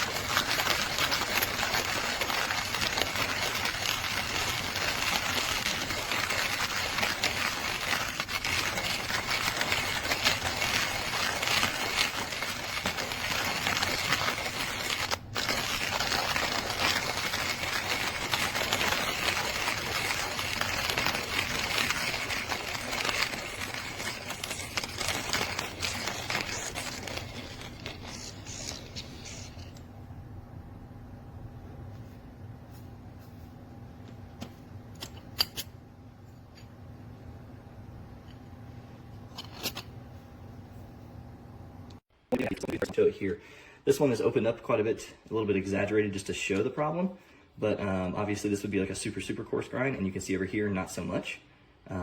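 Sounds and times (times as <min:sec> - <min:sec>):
manual coffee grinder crunching beans: 0:00.0 - 0:29.9, 0:42.4 - 0:43.0.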